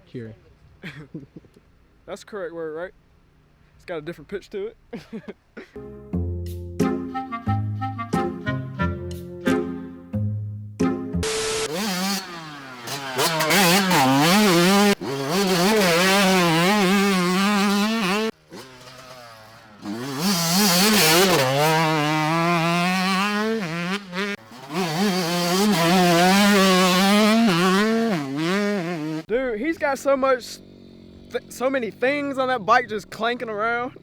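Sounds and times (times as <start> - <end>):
dirt bike engine revving: 11.2 - 29.3, 30.4 - 32.6.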